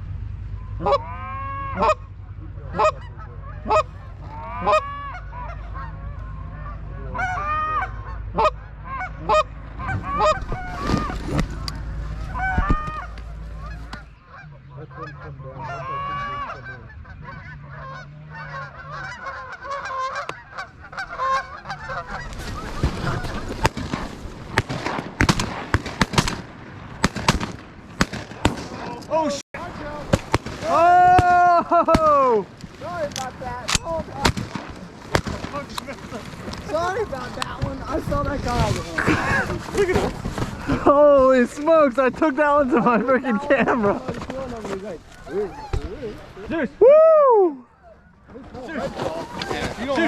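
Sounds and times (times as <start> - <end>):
geese honking: 0.5 - 46.8, 47.6 - 50.0
shotgun shots: 22.8 - 32.3, 33.1 - 36.0.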